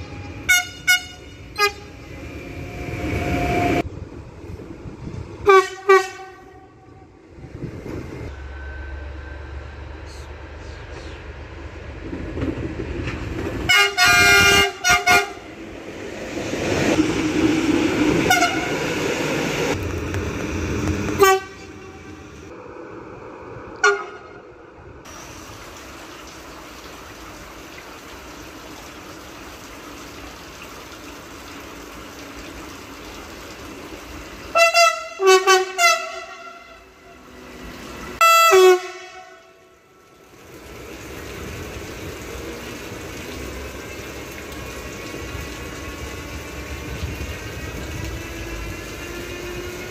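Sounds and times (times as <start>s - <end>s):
train rumbling past: 0.0s - 30.0s, 31.1s - 49.9s
train horn toots: 0.5s - 2.1s, 5.4s - 7.1s, 13.7s - 15.4s, 18.3s - 18.9s, 21.2s - 22.2s, 23.8s - 24.4s, 34.5s - 37.2s, 38.2s - 39.9s.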